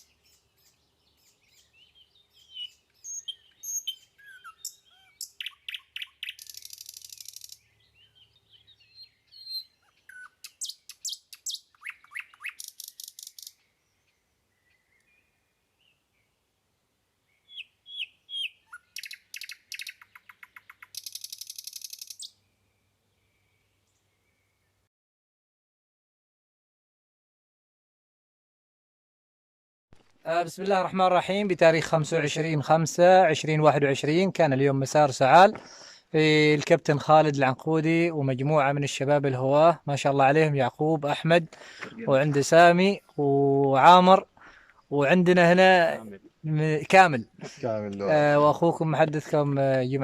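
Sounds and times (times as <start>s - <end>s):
songbird chirping and trilling: 0.0s - 24.9s.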